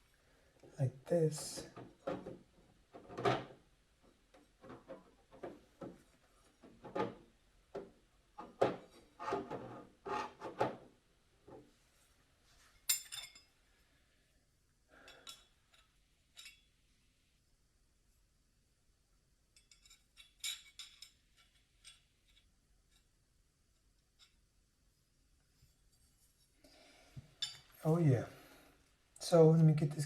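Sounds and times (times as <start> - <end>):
metal parts tapping and clinking: 19.6 - 22.5.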